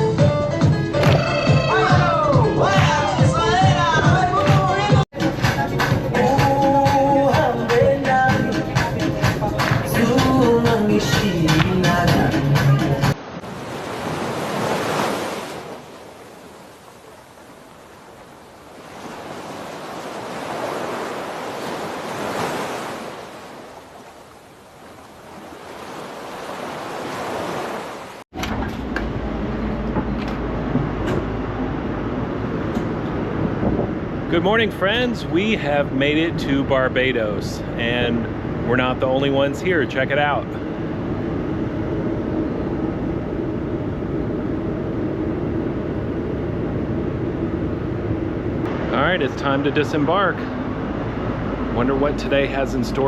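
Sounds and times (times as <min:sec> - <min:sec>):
ocean waves washing: 0:01.2 - 0:28.3, 0:31.2 - 0:53.0
machinery low rumble: 0:28.4 - 0:53.0
wind buffeting microphone: 0:32.0 - 0:35.6.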